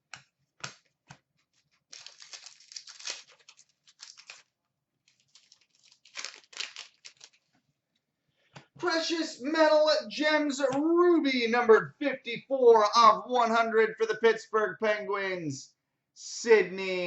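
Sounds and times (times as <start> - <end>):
cards being handled: 0.5 - 7.6
wrapper crinkling and tearing: 1.5 - 7.5.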